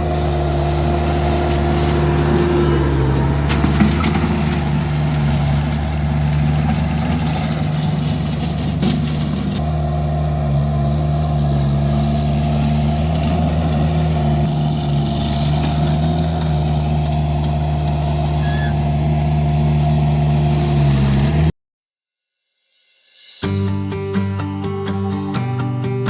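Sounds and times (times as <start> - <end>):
skid steer engine running: 0.0 - 21.5.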